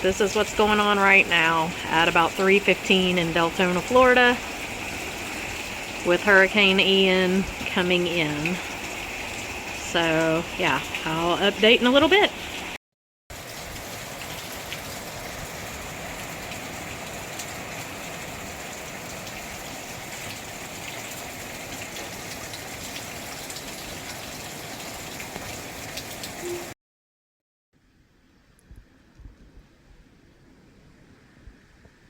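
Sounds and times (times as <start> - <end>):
heavy rain hissing: 0.0 - 26.8
rain drop ticks: 25.1 - 26.8.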